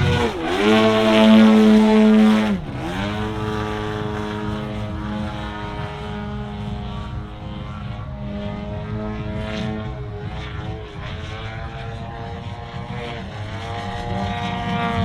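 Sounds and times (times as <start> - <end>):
model plane engine and propeller: 0.0 - 15.0.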